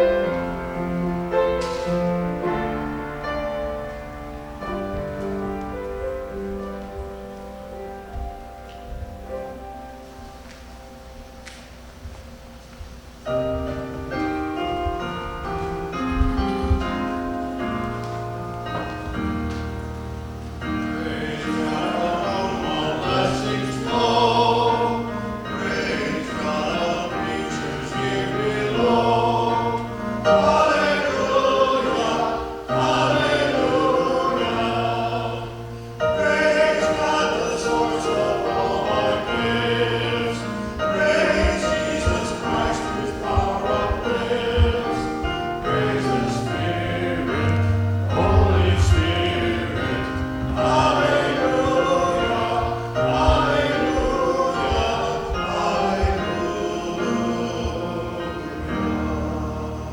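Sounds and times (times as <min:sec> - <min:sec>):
held accompaniment notes: 0:00.0 - 0:59.9
people singing: 0:20.6 - 0:59.9.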